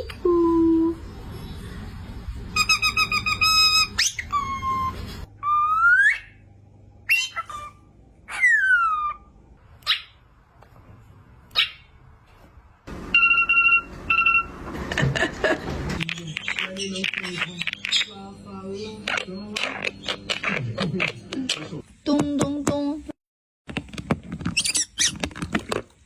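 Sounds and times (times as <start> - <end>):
parrot whistling pitch glides: 2.6 - 6.4
short steady beeps: 13.1 - 14.5.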